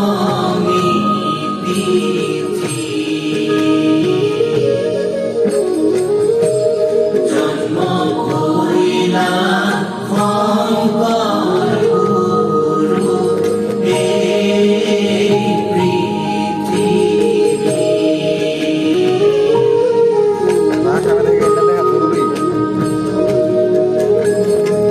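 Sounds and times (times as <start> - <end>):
group of voices singing long notes: 0.0 - 5.5, 7.1 - 20.4.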